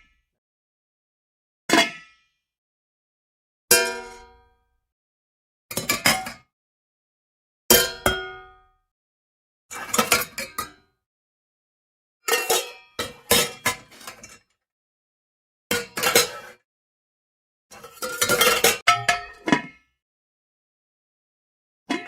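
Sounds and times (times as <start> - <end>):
metal pots and pans clattering: 9.8 - 10.7, 12.3 - 14.4, 15.7 - 16.6, 17.7 - 19.8.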